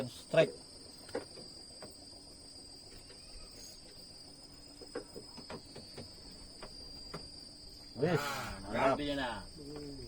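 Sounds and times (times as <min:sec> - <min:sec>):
insects trilling: 0:00.0 - 0:10.0
faint knocks: 0:04.7 - 0:07.4.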